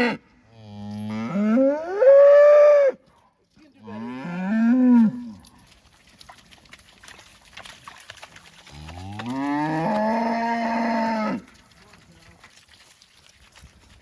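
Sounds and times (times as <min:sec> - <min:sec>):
cattle mooing: 0:08.7 - 0:11.5.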